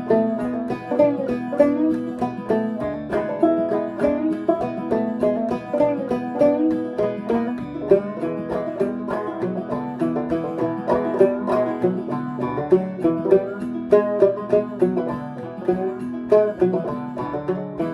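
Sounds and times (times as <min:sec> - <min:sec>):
clawhammer banjo playing: 0:00.0 - 0:17.9.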